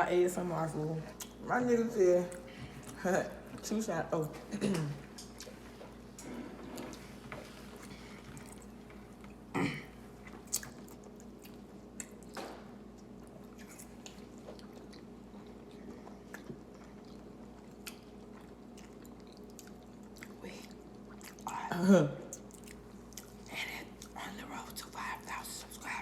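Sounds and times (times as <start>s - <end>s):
person chewing with wet smacks: 1.1s - 1.4s, 4.8s - 6.0s, 7.7s - 9.5s, 10.1s - 21.7s, 22.3s - 25.9s.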